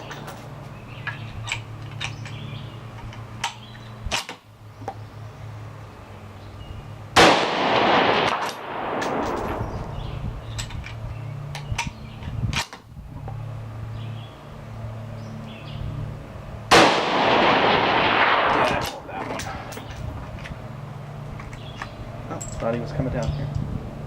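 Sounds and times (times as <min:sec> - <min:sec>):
rifle shots echoing: 0:07.2 - 0:10.0, 0:16.7 - 0:19.1.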